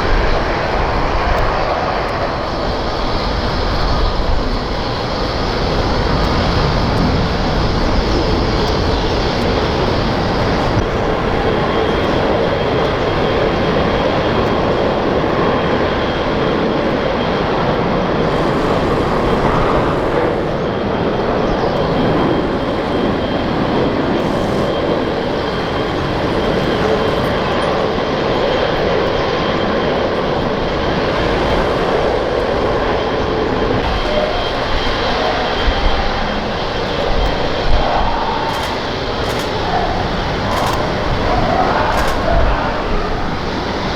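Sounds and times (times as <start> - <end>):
airliner engines running: 0.0 - 43.9.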